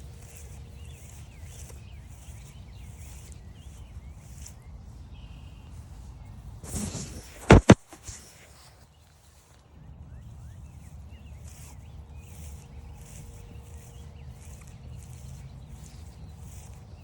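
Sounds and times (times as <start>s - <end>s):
faint bird chirps: 0.0s - 7.6s, 8.5s - 17.0s
footsteps on a forest trail: 0.0s - 17.0s
rustling burst: 6.6s - 8.7s.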